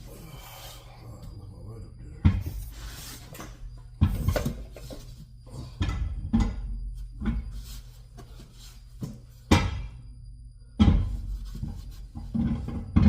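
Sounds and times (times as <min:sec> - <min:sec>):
knocks and clanks of wheel and tools: 0:05.8 - 0:07.6, 0:10.8 - 0:13.0.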